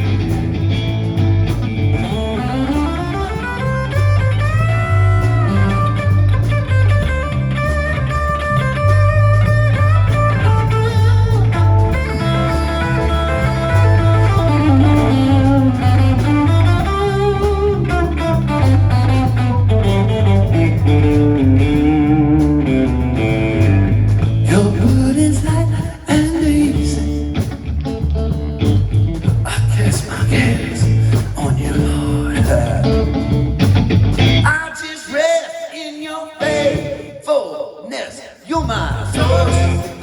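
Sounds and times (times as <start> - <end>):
lead guitar solo with bending notes: 0.0 - 24.6
steady bass line: 0.0 - 34.5, 38.6 - 40.0.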